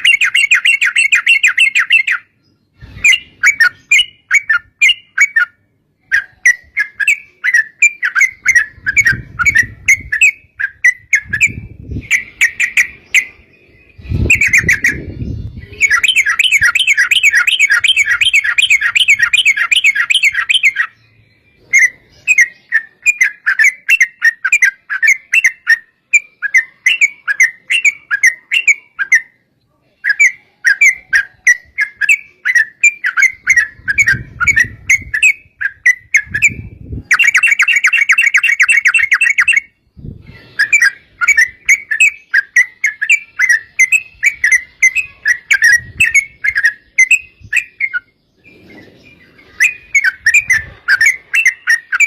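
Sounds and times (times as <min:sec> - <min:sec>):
bulbuls singing bubbly chatter: 0:06.1 - 0:21.0.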